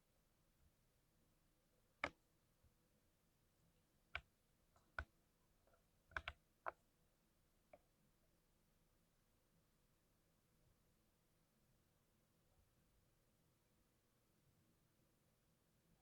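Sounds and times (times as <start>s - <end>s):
mechanical keyboard key presses: 6.1s - 6.4s.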